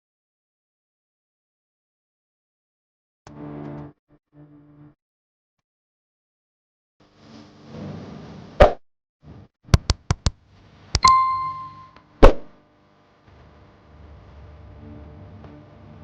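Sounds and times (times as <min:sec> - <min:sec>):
bell-like ding: 0:11.0 - 0:12.0.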